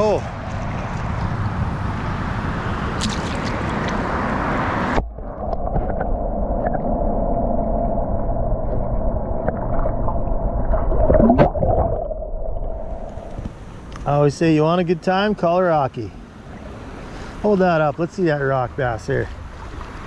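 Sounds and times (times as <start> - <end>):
underwater gurgling wash: 0.0 - 13.9
creek water hissing: 12.8 - 20.0.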